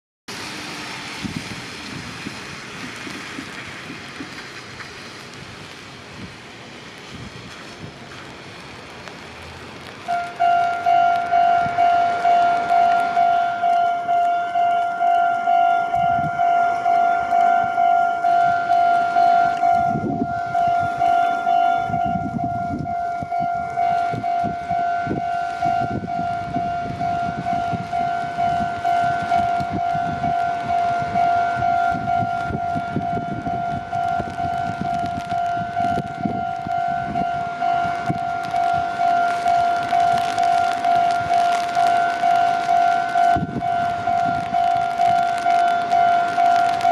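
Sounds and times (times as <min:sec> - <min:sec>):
train rumbling past: 0:00.3 - 0:46.9
level-crossing warning bell: 0:10.1 - 0:46.9.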